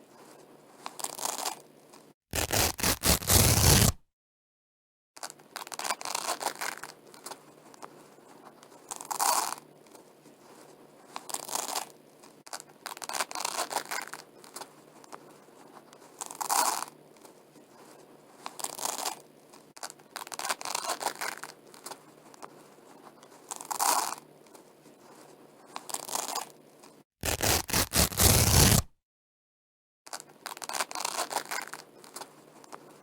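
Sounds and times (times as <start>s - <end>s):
velcro ripping apart: 2.3s - 4.0s, 27.2s - 28.9s.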